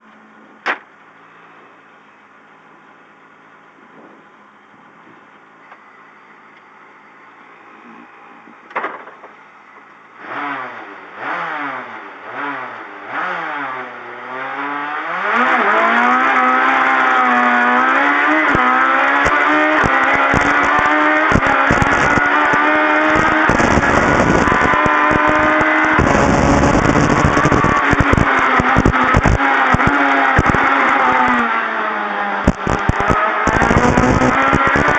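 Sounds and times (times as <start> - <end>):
rally car engine revving: 10.1 - 34.9.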